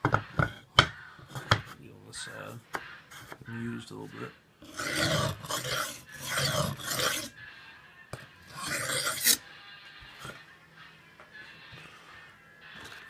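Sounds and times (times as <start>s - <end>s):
knife grinding on whetstone: 4.6s - 7.4s, 8.4s - 9.4s.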